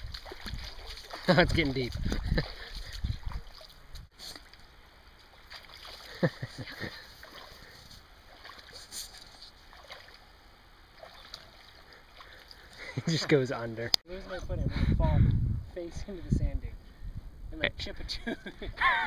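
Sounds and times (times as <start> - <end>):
feet sloshing through water: 0.0 - 13.4.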